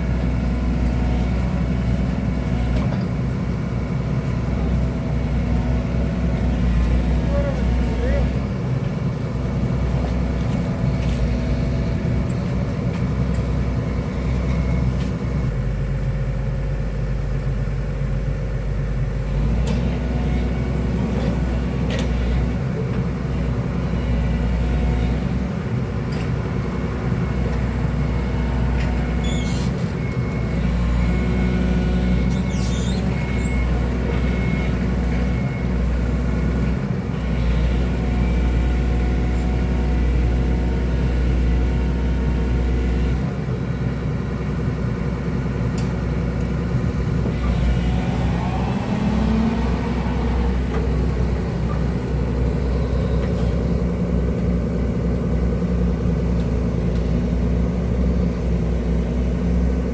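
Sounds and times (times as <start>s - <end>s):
excavator diesel engine running: 0.0s - 59.9s
brief high squeaks: 29.2s - 29.8s, 32.4s - 33.1s.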